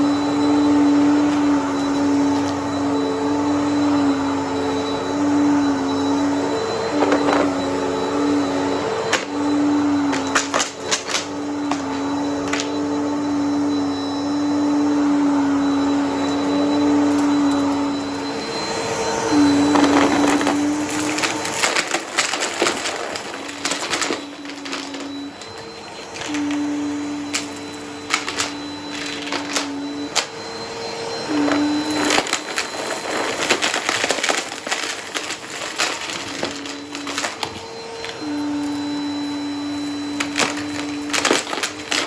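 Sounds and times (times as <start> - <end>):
vacuum cleaner motor hum: 0.0 - 42.0
debris clicking through vacuum: 31.4 - 38.2.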